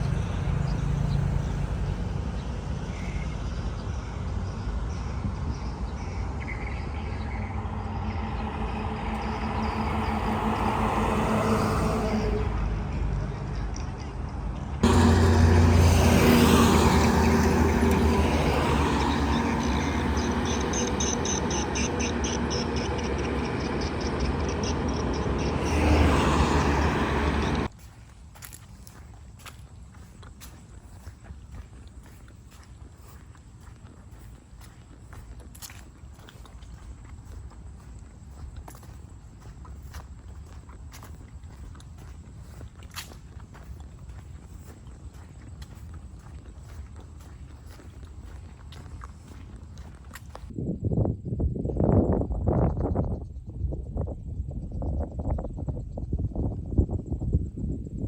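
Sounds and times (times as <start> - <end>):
small birds chirping: 0.0 - 10.6, 17.0 - 26.8, 28.7 - 50.5
low rumble of traffic: 0.0 - 58.0
motor hum: 14.8 - 27.7.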